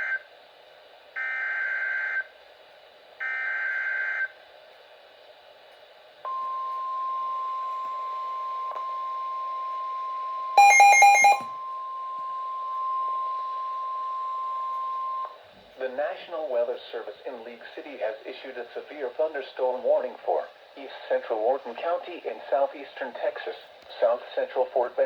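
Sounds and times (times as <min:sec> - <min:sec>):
loud raspy beep: 0:10.6 - 0:11.5
steady alarm tone: 0:10.6 - 0:11.5.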